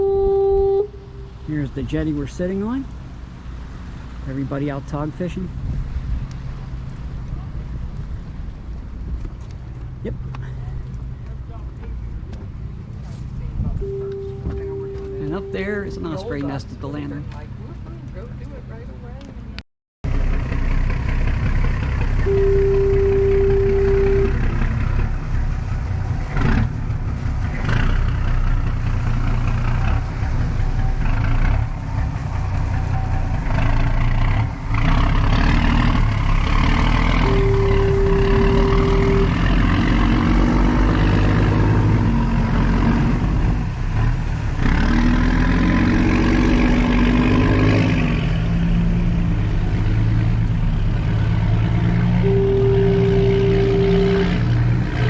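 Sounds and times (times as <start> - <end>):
long steady tones: 0.0 - 2.7, 13.8 - 17.0, 22.2 - 24.8, 37.2 - 40.2, 52.2 - 55.0
water noise: 0.0 - 19.5, 20.1 - 55.0
motorboat engine rumble: 0.0 - 55.0
wind: 0.0 - 55.0.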